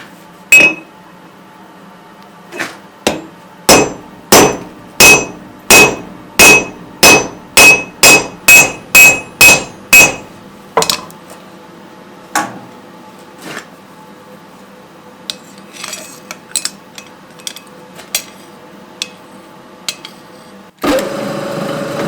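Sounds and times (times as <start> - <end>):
hammer striking steel on anvil: 0.5 - 0.9, 3.1 - 11.0.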